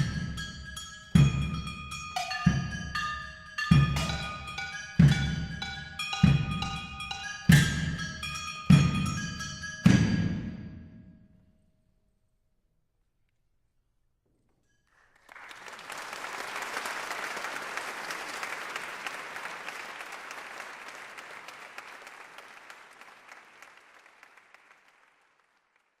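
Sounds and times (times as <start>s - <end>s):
audience applause: 14.9s - 26.0s.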